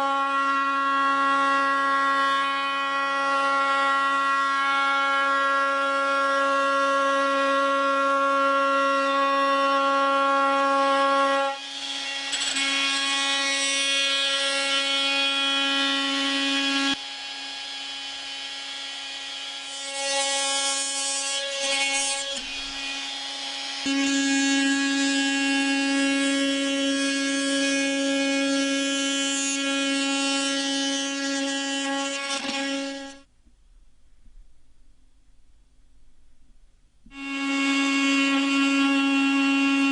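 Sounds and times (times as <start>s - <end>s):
oscillating multi-tool humming: 4.0s - 33.3s, 37.1s - 39.9s
blade rasping into material: 9.7s - 17.1s, 19.6s - 33.3s.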